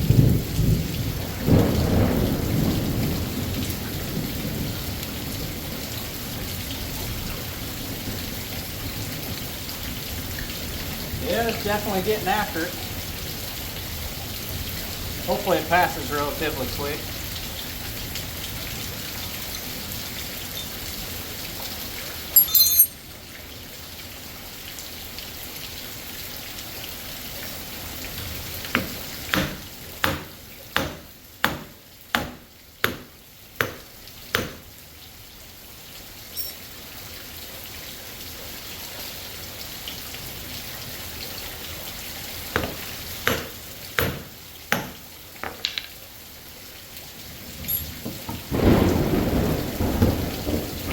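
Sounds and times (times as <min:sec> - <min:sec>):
heavy rain: 0:00.0 - 0:50.9
runs of sharp knocks: 0:28.8 - 0:34.6, 0:42.6 - 0:45.8.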